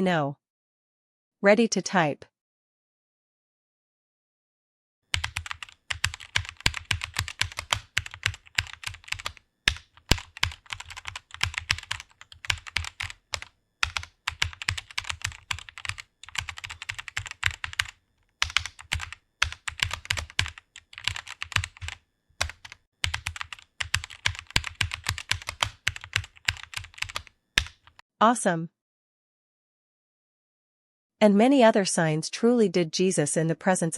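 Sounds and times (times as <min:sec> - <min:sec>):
fast typing on keyboard: 0:05.1 - 0:28.0.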